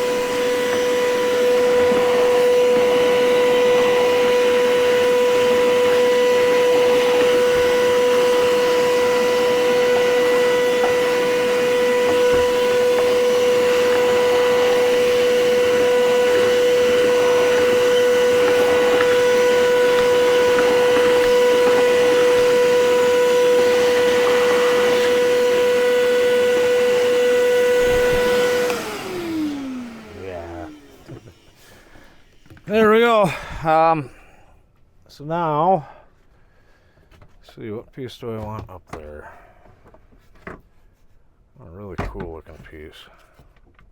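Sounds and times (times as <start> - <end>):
vacuum cleaner running: 0.0 - 34.2.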